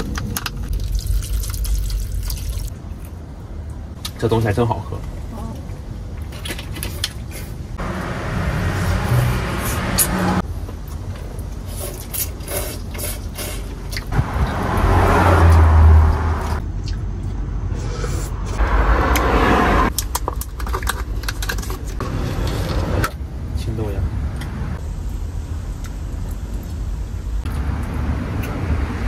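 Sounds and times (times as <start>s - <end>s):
cars passing: 7.7s - 10.5s, 14.1s - 20.0s, 22.0s - 24.8s, 27.4s - 29.0s.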